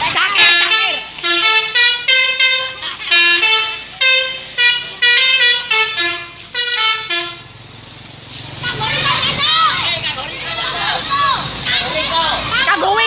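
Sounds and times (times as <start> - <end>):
musical air horns playing tune: 0.3 - 7.5.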